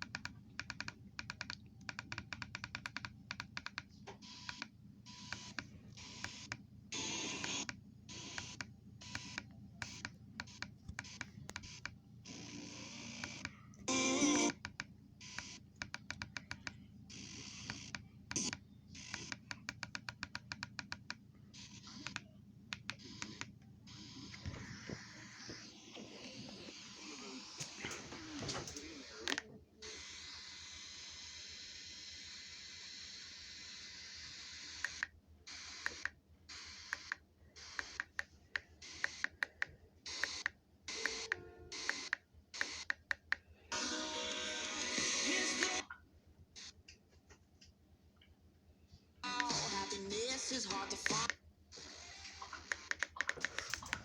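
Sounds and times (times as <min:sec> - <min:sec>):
sharp clicks: 0:00.0 - 0:04.7, 0:14.4 - 0:24.6, 0:36.9 - 0:43.5, 0:52.4 - 0:54.0
radio static hiss: 0:24.0 - 0:30.4
music on radio: 0:24.2 - 0:29.5, 0:43.7 - 0:46.0, 0:49.2 - 0:54.0.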